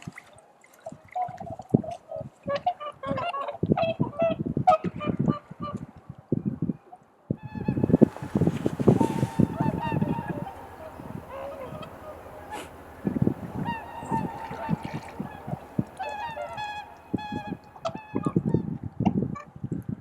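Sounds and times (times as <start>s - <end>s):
swans honking: 7.5s - 18.5s.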